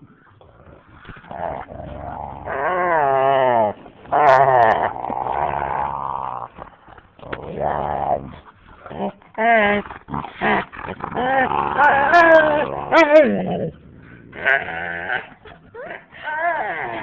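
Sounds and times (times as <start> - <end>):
dogs growling while play-fighting: 0.4 - 17.0.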